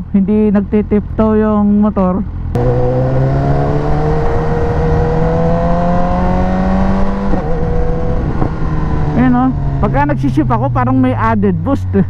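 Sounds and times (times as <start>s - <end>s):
motorcycle engine accelerating: 2.4s - 12.0s.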